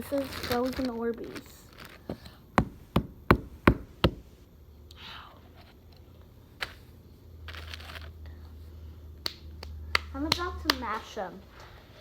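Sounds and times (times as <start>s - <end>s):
knocks on hard surface: 2.1s - 4.4s.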